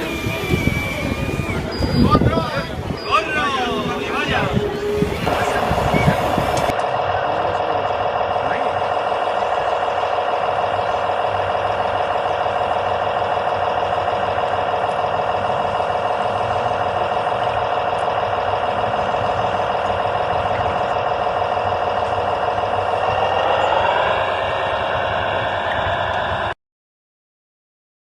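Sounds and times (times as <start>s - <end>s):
truck engine idling and revving: 0.0s - 26.6s.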